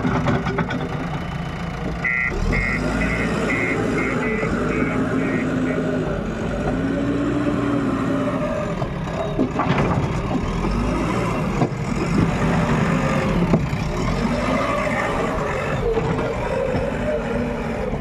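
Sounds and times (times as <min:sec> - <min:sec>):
metal knocks and clanks: 0:00.0 - 0:02.0, 0:09.3 - 0:10.9
diesel engine running: 0:00.0 - 0:18.0.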